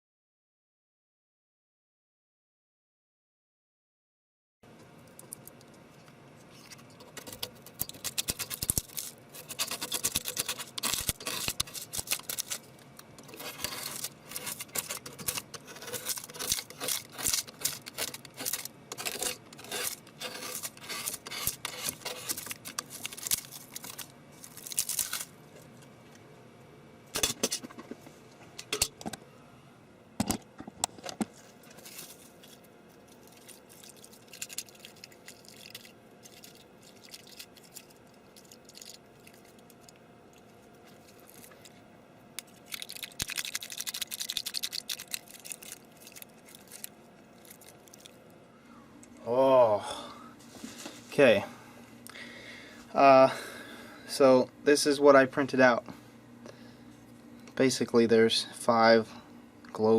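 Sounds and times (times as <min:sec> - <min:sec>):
small hard objects clicking and rattling: 0:07.0 - 0:25.3, 0:31.7 - 0:40.0, 0:42.4 - 0:48.1.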